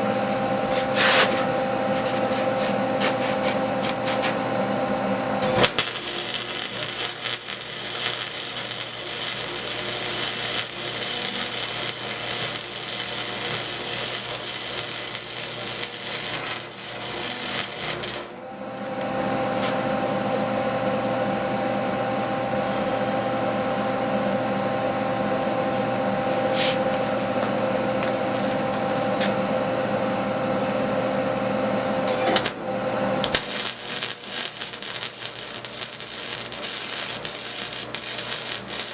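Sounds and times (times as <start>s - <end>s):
steady hum: 0.0s - 20.8s, 31.7s - 38.9s
arc welding crackling: 0.7s - 4.4s, 5.4s - 18.4s, 32.2s - 32.6s, 33.2s - 38.9s.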